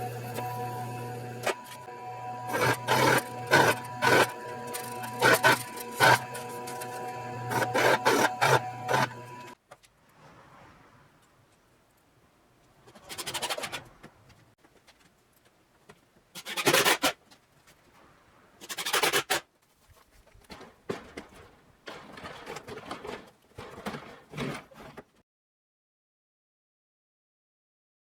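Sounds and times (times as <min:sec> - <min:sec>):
scraping on a storm shutter: 0:18.6 - 0:25.2.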